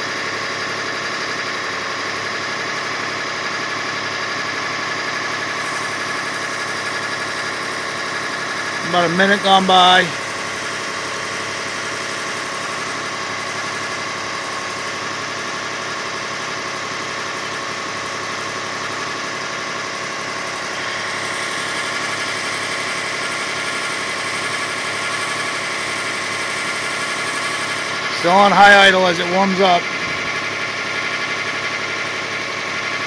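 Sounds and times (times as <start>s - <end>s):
faint engine noise: 0.0s - 33.0s
car engine idling: 5.0s - 17.0s, 21.2s - 33.0s.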